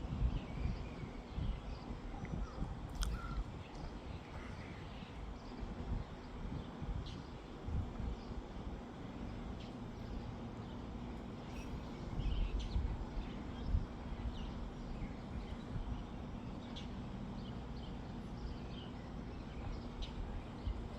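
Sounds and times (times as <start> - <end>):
low background hum: 0.0 - 20.9
bird chirps: 11.4 - 20.8.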